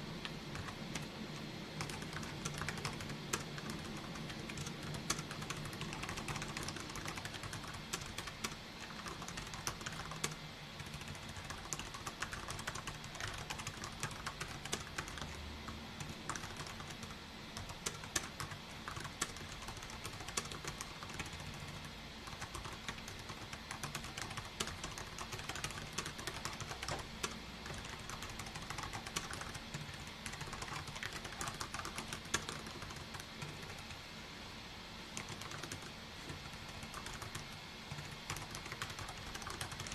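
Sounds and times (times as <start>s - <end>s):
faint low hum: 0.0s - 39.9s
keyboard typing: 0.2s - 1.1s, 1.8s - 15.4s, 16.0s - 34.0s, 35.2s - 39.9s.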